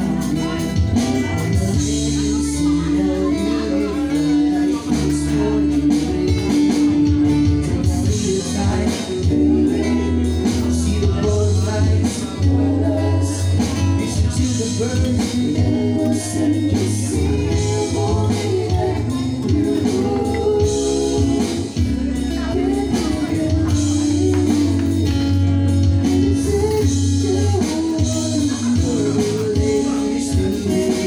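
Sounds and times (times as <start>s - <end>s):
song with singing and guitar: 0.0s - 31.0s.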